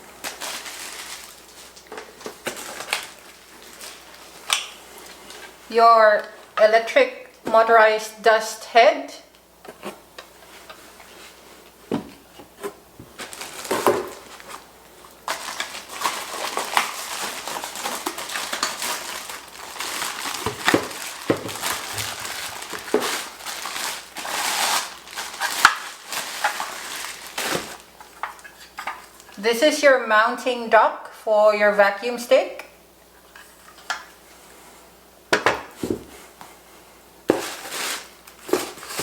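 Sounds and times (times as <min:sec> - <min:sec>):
plastic packaging crinkling: 0:00.0 - 0:05.6, 0:13.0 - 0:29.4, 0:37.3 - 0:39.0.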